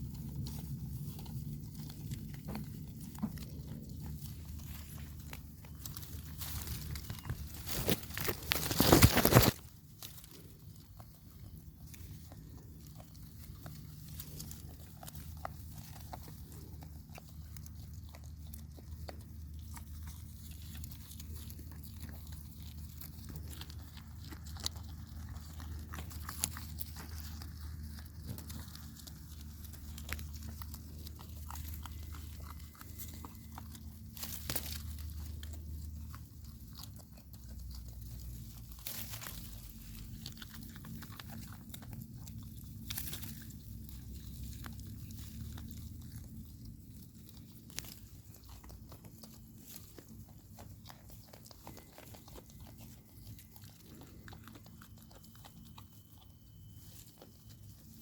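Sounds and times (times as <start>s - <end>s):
goat chewing beans: 0.0s - 58.0s.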